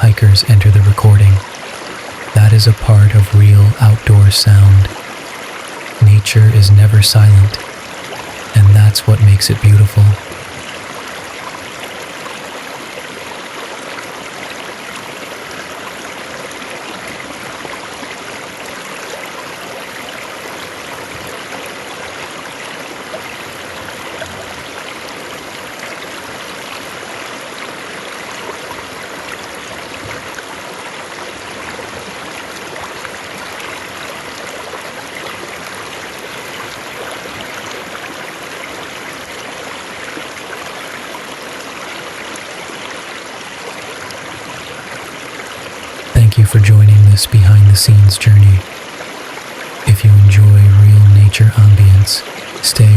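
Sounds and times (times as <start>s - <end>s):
river water flowing: 1.4s - 2.4s, 10.2s - 46.1s.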